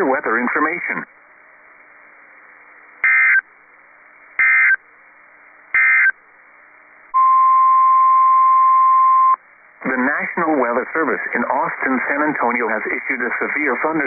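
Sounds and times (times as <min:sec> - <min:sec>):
radio hiss: 0:00.0 - 0:07.2, 0:09.3 - 0:14.0
digital data squawks: 0:03.0 - 0:03.5, 0:04.4 - 0:04.8, 0:05.8 - 0:06.2.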